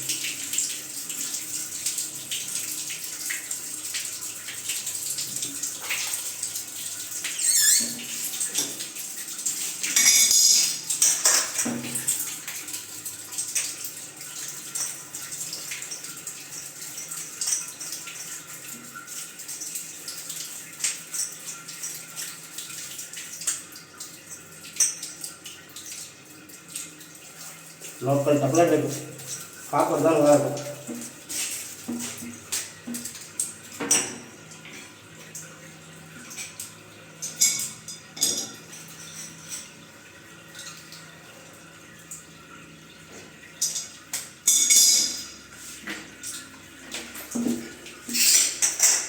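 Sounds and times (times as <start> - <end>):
water running from tap: 0.0 - 49.0
metal fittings clinking: 10.0 - 11.4, 44.5 - 45.3, 48.1 - 49.0.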